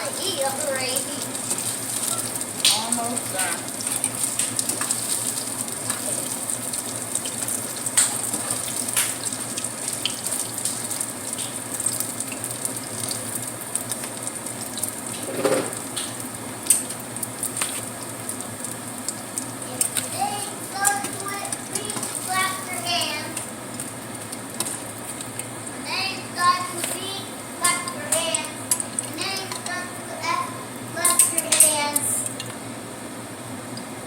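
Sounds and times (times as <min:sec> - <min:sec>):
tofu sizzling in oil: 0:00.0 - 0:25.6
oil popping and crackling: 0:00.0 - 0:25.8, 0:26.7 - 0:29.8.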